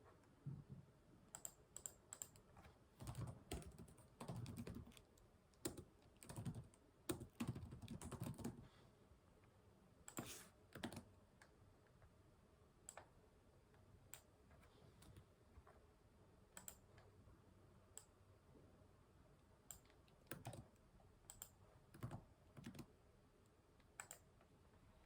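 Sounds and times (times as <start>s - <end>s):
computer keyboard typing: 1.3s - 8.6s, 10.1s - 11.1s, 16.6s - 16.9s, 19.7s - 22.9s, 24.0s - 24.3s.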